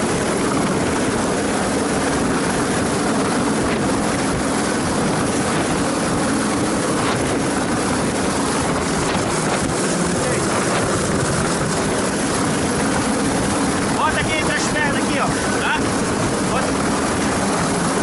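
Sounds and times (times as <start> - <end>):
helicopter engine and rotor: 4.7 - 18.0.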